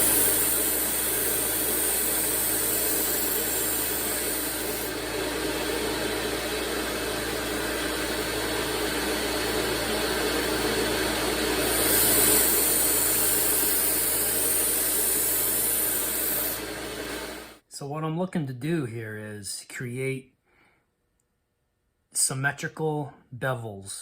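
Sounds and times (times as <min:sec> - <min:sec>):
knife grinding on belt hiss: 0:00.0 - 0:16.8
belt sander running: 0:00.0 - 0:17.6.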